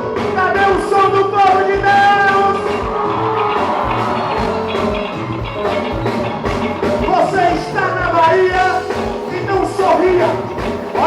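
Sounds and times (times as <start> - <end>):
drum kit fast beat: 0.0 - 11.0
sustained instrumental chords: 0.0 - 11.0.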